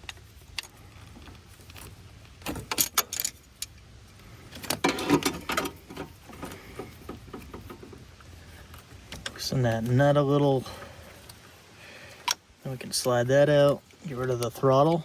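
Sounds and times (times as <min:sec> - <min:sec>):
metal tools clinking and rattling: 0:02.5 - 0:03.8, 0:04.6 - 0:08.0.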